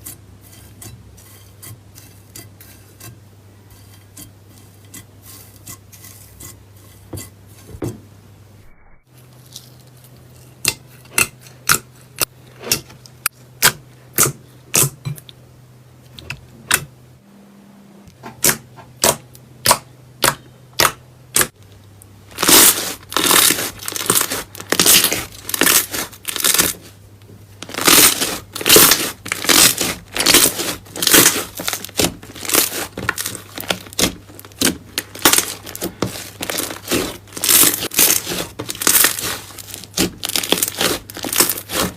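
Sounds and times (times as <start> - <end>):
slime popping and crackling: 22.3 - 26.8, 27.6 - 41.9.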